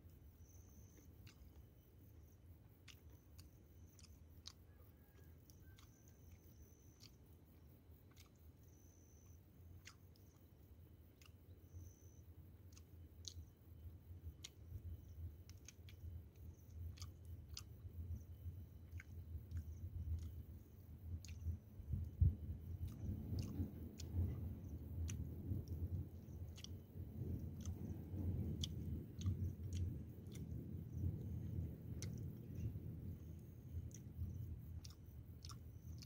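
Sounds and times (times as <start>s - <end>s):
low steady hum: 0.0s - 36.0s
mouth chewing: 0.4s - 36.0s
wet mouth clicks and smacks: 1.2s - 1.7s, 2.8s - 7.2s, 8.1s - 8.9s, 9.8s - 10.5s, 12.7s - 13.5s, 14.4s - 32.7s, 33.8s - 36.0s.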